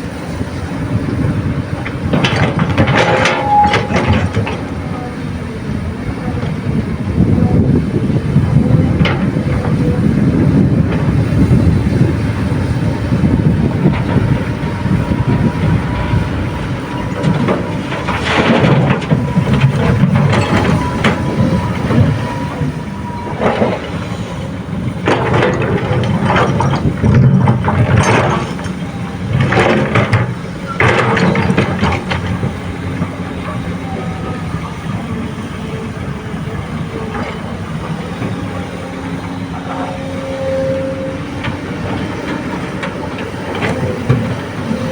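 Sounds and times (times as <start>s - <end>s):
excavator diesel engine under load: 0.0s - 44.9s
rocks clattering into steel truck bed: 25.0s - 32.4s.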